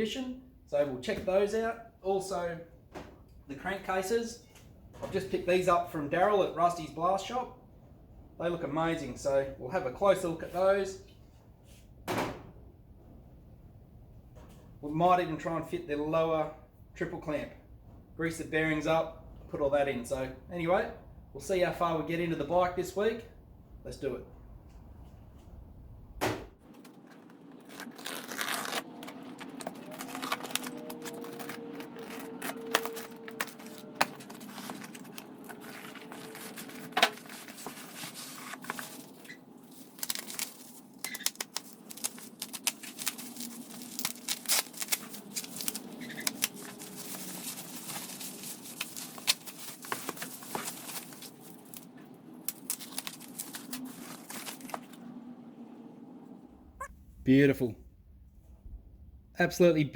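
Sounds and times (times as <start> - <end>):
wrapping crinkling: 26.7 - 55.0
tape and paper tearing: 27.5 - 54.8
small crackles and knocks: 29.0 - 55.0.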